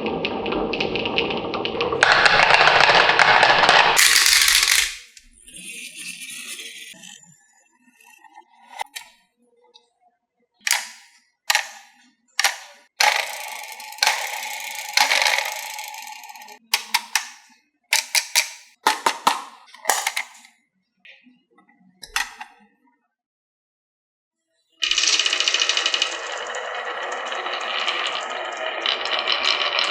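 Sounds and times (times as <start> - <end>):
marbles rolling on wooden track: 1.9 - 5.2, 10.7 - 20.4, 24.8 - 29.9
marbles clacking on wooden track: 2.0 - 5.2, 10.7 - 20.4, 24.8 - 29.9
steady rattling: 10.7 - 20.5.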